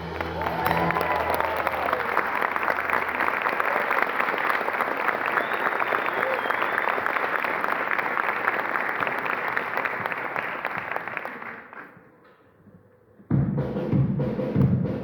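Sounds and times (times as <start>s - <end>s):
orchestra playing: 0.0s - 3.0s
audience applauding: 0.0s - 12.0s
loud low drum beat: 13.3s - 15.0s.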